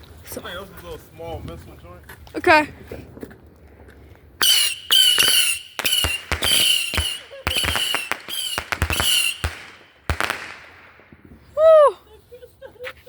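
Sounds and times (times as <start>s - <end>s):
firework crackling snaps: 3.6s - 11.7s
whistling fireworks: 4.4s - 12.0s.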